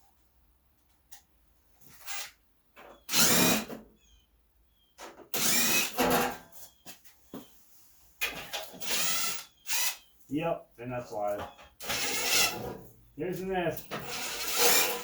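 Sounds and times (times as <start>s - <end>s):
impact wrench bursts: 3.1s - 3.7s, 11.8s - 12.6s, 13.9s - 15.0s.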